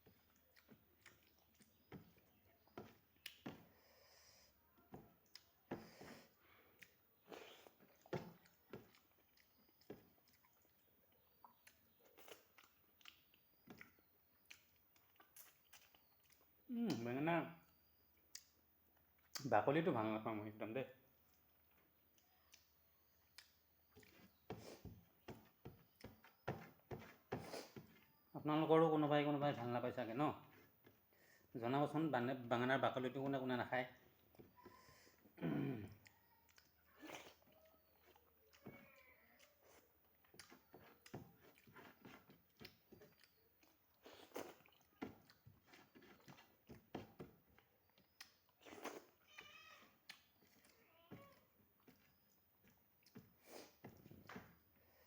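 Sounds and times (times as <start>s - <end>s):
wet chewing smacks: 0.0s - 3.6s, 6.7s - 16.6s, 21.3s - 25.3s, 34.1s - 49.2s, 50.0s - 54.4s.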